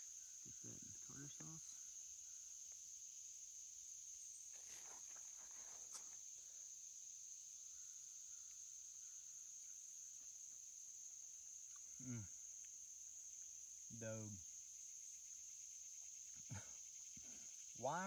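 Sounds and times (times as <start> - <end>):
crickets chirping: 0.0 - 18.0
soft rustle: 4.4 - 6.3.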